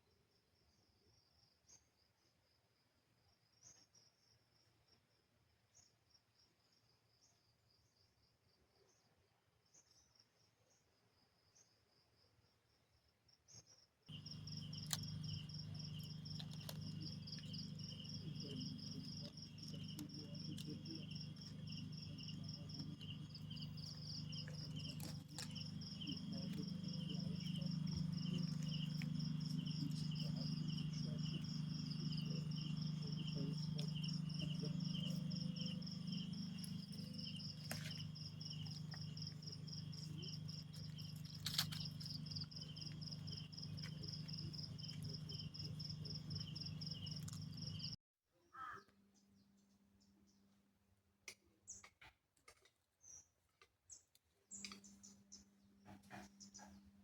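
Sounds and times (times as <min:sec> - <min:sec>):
insects chirping trills: 0:14.1 - 0:48.0
steady low hum: 0:14.1 - 0:48.0
faint clicks: 0:14.2 - 0:45.8.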